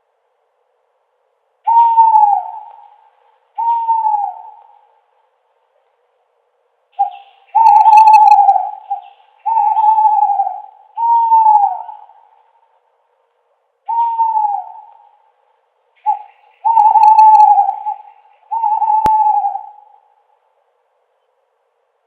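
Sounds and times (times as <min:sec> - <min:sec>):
owl hooting: 0:01.6 - 0:05.1, 0:06.9 - 0:12.7, 0:13.8 - 0:15.4, 0:16.0 - 0:20.5.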